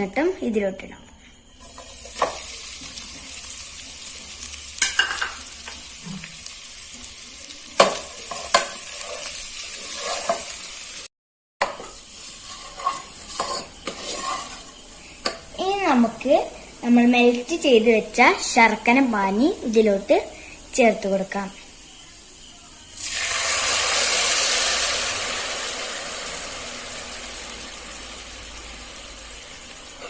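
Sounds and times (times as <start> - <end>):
food sizzling in hot oil: 1.4 - 30.0
spoon scraping a pan: 1.6 - 3.1, 4.8 - 6.4, 7.7 - 10.7, 11.6 - 15.5.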